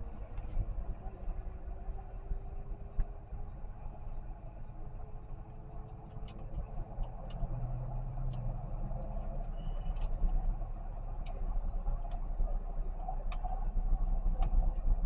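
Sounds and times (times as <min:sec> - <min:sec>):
car engine and road rumble: 0:00.0 - 0:15.0
faint clicks: 0:11.2 - 0:12.2.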